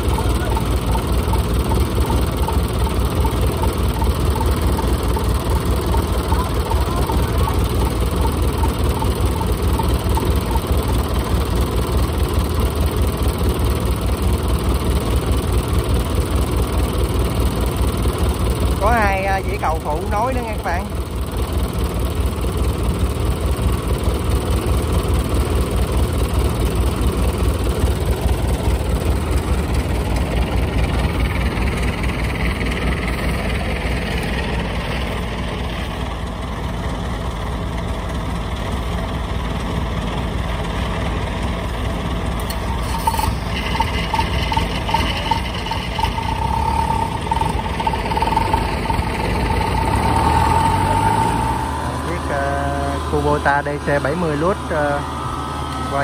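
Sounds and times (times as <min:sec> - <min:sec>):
combine harvester diesel chugging: 0:00.0 - 0:56.0
higher steady tone: 0:42.4 - 0:56.0.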